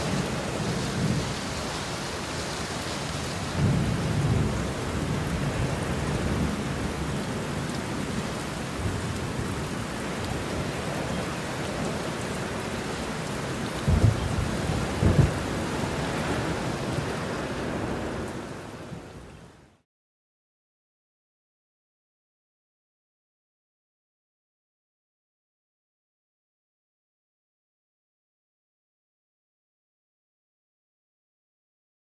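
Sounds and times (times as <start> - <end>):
rolling thunder: 0.0 - 10.7, 13.8 - 18.3
steady rain: 0.0 - 19.8
sharp thunder claps: 3.5 - 6.5, 13.8 - 15.5.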